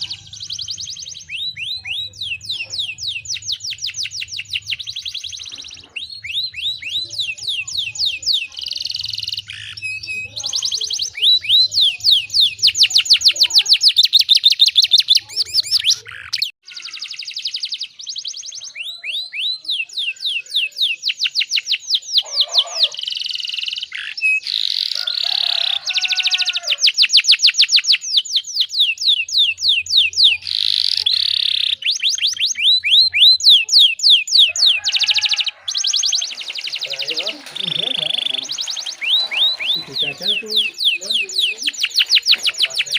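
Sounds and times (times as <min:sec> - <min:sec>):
canary singing trills: 0:00.0 - 0:42.9.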